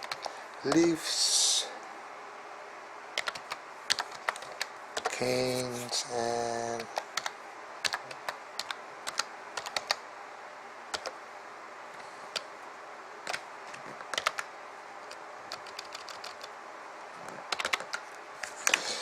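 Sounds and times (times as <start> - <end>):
computer keyboard typing: 0.0 - 0.9, 3.2 - 5.2, 6.8 - 10.0, 10.9 - 11.2, 13.2 - 14.5, 15.1 - 16.5, 17.5 - 18.8
faint steady hiss: 0.0 - 19.0.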